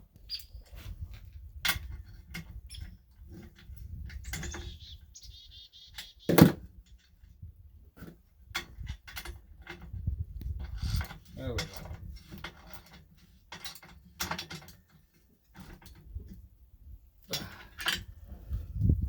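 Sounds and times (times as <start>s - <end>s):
loud metal clunk: 6.3s - 6.6s.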